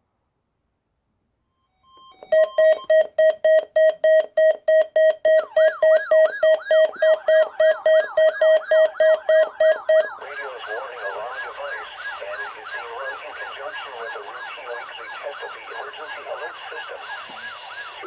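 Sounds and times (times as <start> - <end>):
loud beeping alarm: 1.6 - 18.0
falling siren-like sweep: 5.5 - 18.0.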